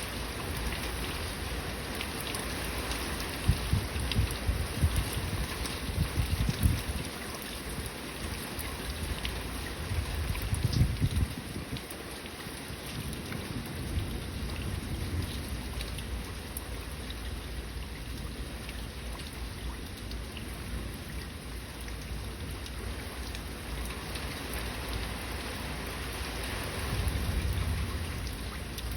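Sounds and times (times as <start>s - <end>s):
steady rain: 0.0s - 28.9s
low thunder rumble: 26.8s - 28.9s.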